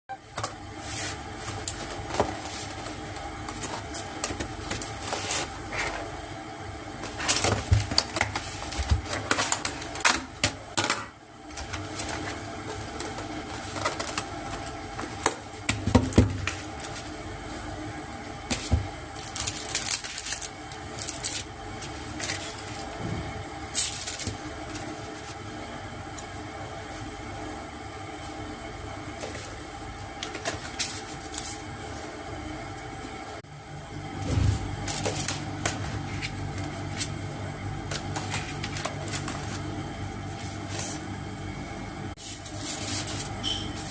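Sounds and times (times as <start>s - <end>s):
packaging rustling: 11.5s - 15.5s, 18.5s - 23.0s.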